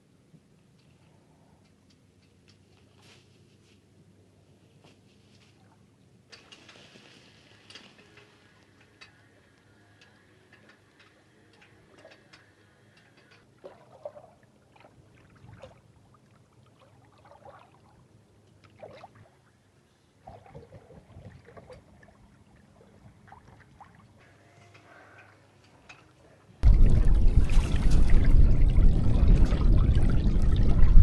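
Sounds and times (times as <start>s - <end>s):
water lapping against hull: 10.5s - 31.0s.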